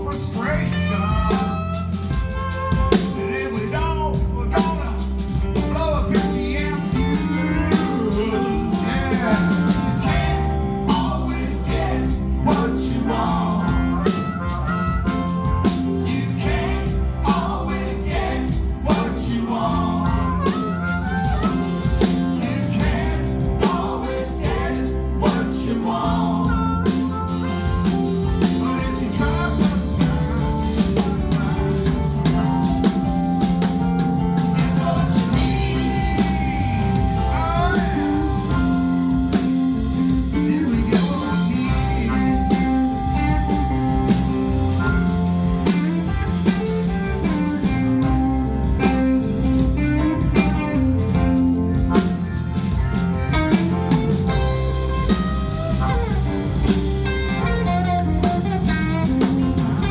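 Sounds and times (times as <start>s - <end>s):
drum kit beat: 0.0s - 59.9s
rock band playing live: 0.0s - 59.9s
person singing: 2.8s - 48.2s.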